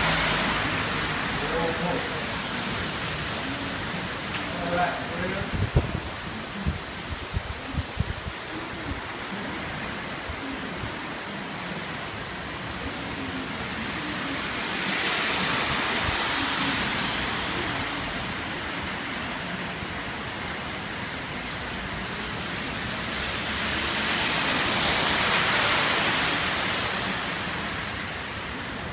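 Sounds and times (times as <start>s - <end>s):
heavy rain pouring: 0.0s - 28.9s.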